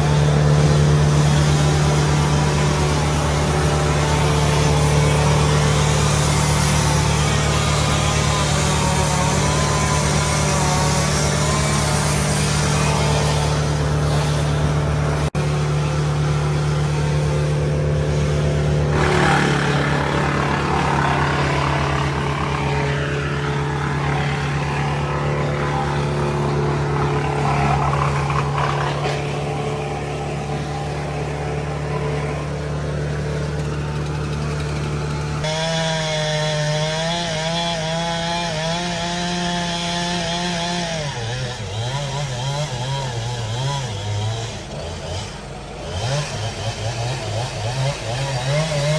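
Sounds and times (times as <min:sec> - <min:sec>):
engines droning: 0:00.0 - 0:35.9
chainsaw cutting: 0:00.0 - 0:48.9
engine revving: 0:00.0 - 0:48.9.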